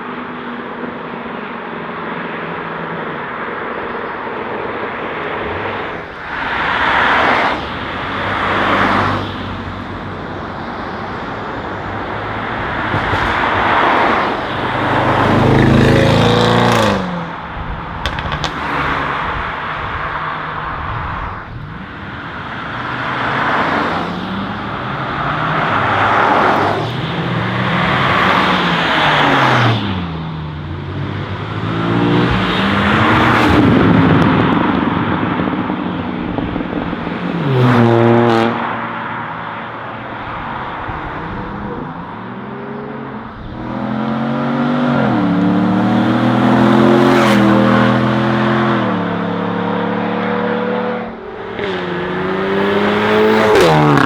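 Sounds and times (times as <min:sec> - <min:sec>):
sports cars accelerating past: 0:11.4 - 0:21.0, 0:21.6 - 0:54.0.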